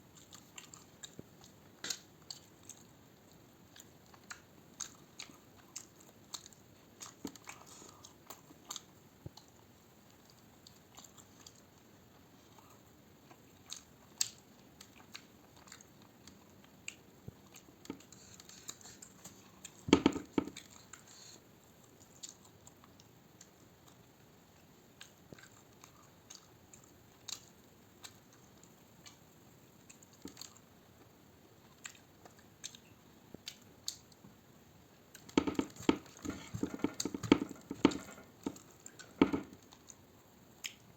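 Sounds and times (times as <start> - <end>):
person chewing: 0.1 - 29.2, 29.8 - 30.7, 31.6 - 34.2, 35.0 - 40.8.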